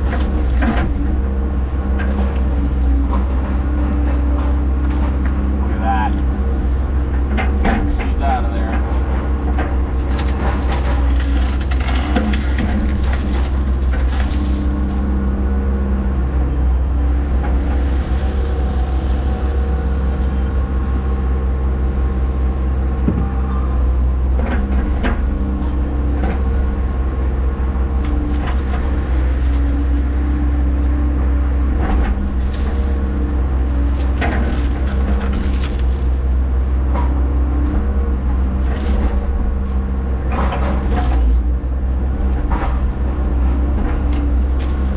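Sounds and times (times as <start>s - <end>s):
excavator diesel engine running: 0.0s - 44.9s
knocks and clanks: 1.8s - 14.7s, 23.0s - 26.6s.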